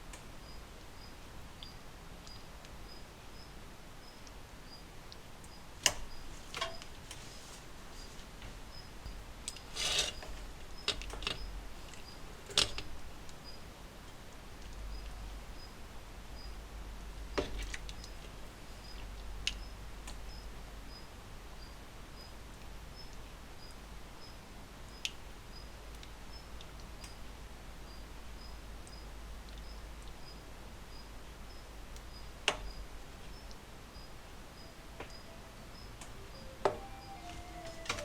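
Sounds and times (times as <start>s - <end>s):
faint steady hiss: 0.0s - 38.0s
rustling: 5.8s - 13.0s
small objects clicking and knocking: 9.5s - 13.0s.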